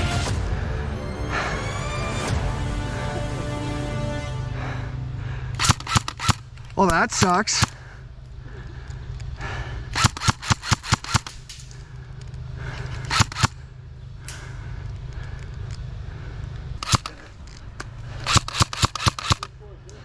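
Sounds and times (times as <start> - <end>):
airsoft gun shots: 5.6 - 7.8, 10.0 - 11.5, 13.1 - 13.6, 16.8 - 17.2, 18.2 - 19.5.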